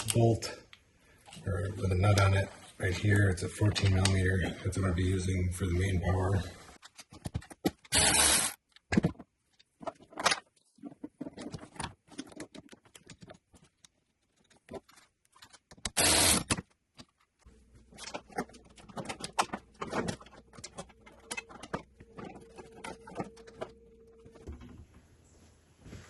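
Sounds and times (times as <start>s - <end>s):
cables being handled: 0.0s - 7.9s, 8.6s - 26.0s
hand tools clicking and clattering: 18.0s - 23.8s.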